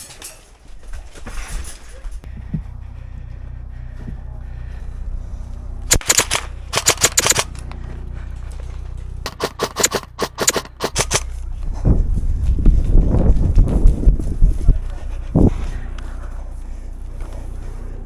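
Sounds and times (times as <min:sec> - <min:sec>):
heavy running footsteps: 0:00.5 - 0:18.0
airsoft guns firing bursts: 0:05.9 - 0:11.4.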